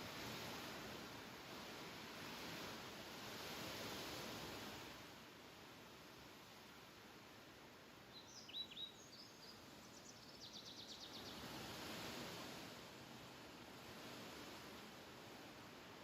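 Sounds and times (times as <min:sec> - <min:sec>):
wind rustling through grass: 0:00.0 - 0:16.0.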